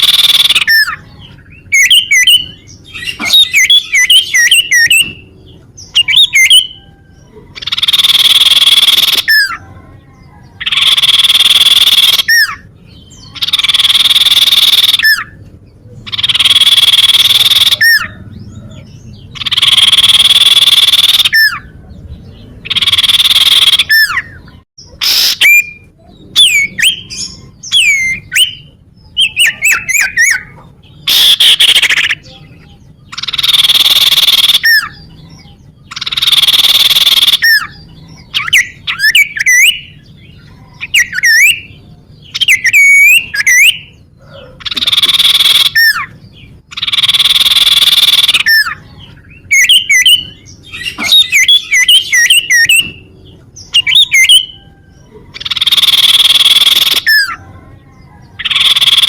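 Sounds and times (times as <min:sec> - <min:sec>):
bird harsh rasping calls: 0:00.0 - 0:59.0
bird whistled notes: 0:53.8 - 0:54.8.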